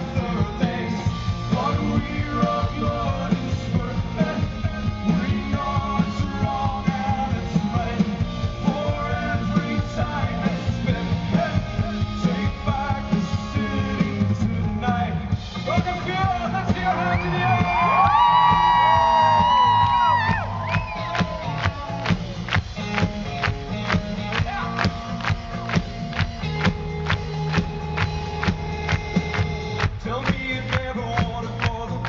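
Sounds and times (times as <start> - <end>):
person singing: 0.0 - 18.2, 28.4 - 32.0
rock band playing live: 0.0 - 32.0.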